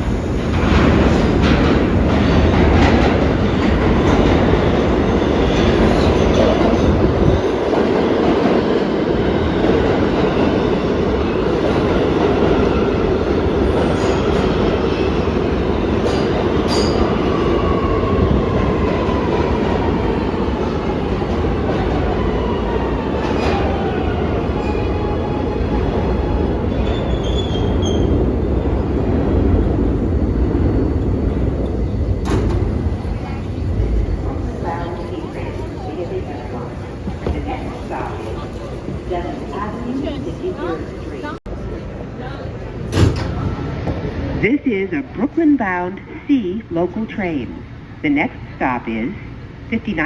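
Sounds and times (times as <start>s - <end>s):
subway train rumbling: 0.0s - 50.0s.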